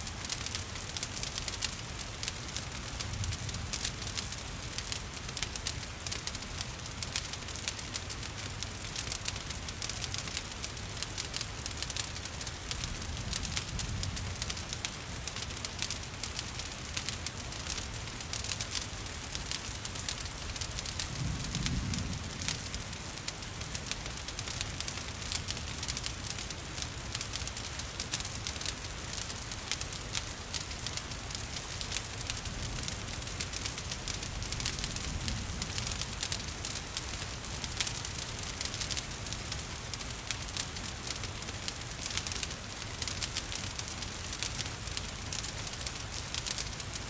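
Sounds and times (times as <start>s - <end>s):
falling rain: 0.0s - 47.0s
wood fire crackling: 0.0s - 47.0s.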